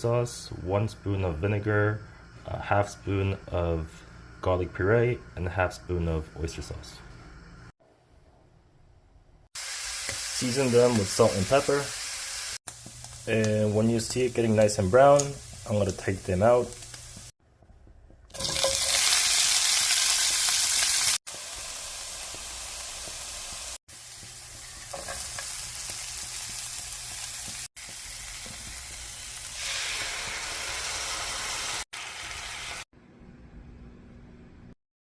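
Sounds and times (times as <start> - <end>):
food sizzling in a frying pan: 9.6 - 17.3, 18.4 - 32.8.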